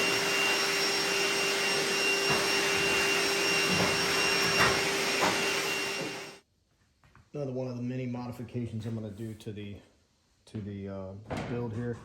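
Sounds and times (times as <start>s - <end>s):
small electric motor whining: 0.0s - 6.4s.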